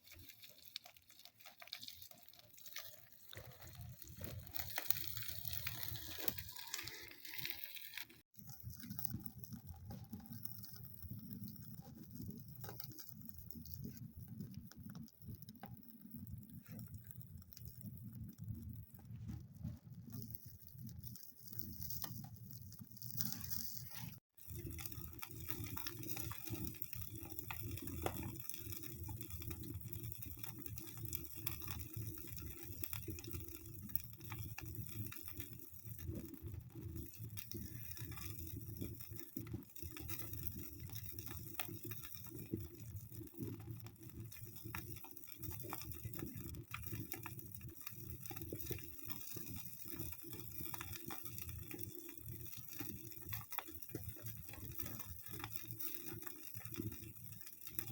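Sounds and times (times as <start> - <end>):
wood fire crackling: 0.0 - 57.9.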